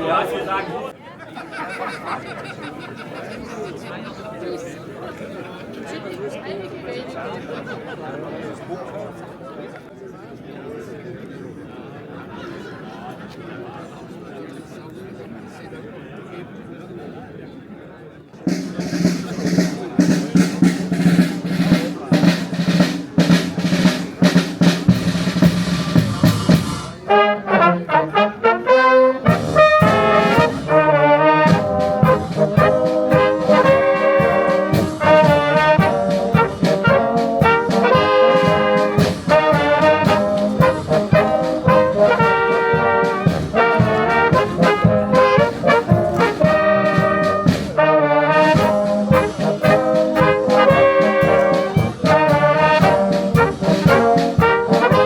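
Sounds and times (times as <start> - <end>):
rapid drum strokes: 18.5 - 27.0, 29.2 - 55.0
brass band music: 18.5 - 55.0
trombone and trumpet melody: 18.6 - 55.0.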